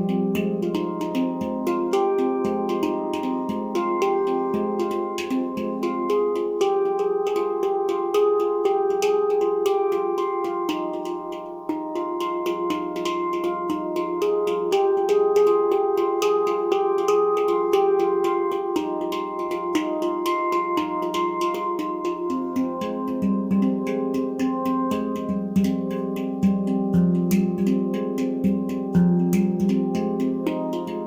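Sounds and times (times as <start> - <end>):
steel drum played by hand: 0.0 - 31.0.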